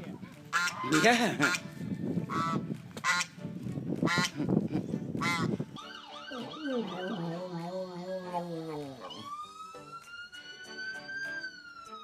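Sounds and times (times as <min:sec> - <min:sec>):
animal honking calls: 0:05.2 - 0:07.4.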